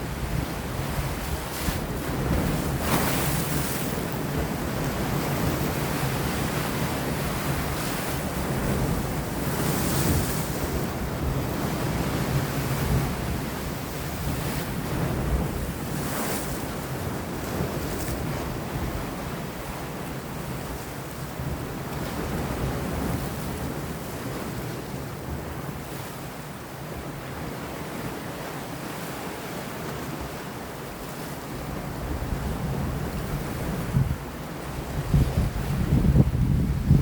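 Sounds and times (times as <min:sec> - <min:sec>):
waves washing against rocks: 0:00.0 - 0:19.8
wind blowing: 0:32.6 - 0:37.0.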